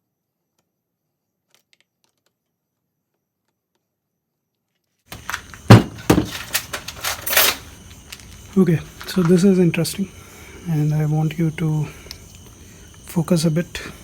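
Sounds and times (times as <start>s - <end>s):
metal engine parts clinking: 5.1s - 10.2s.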